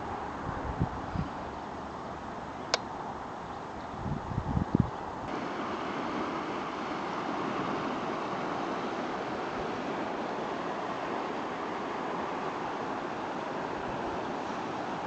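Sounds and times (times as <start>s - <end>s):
river water rushing: 5.1s - 15.0s.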